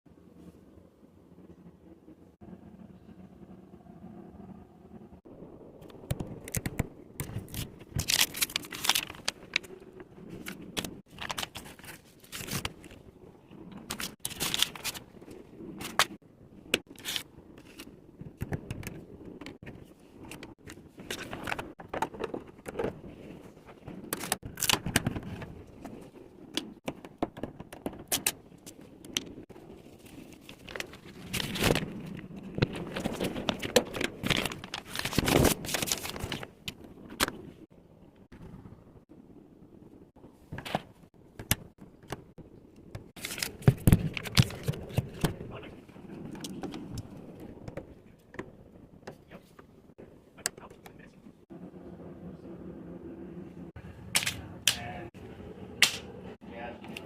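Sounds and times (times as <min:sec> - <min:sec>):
packaging crinkling: 0:06.4 - 0:09.7, 0:13.9 - 0:15.1, 0:30.2 - 0:36.6.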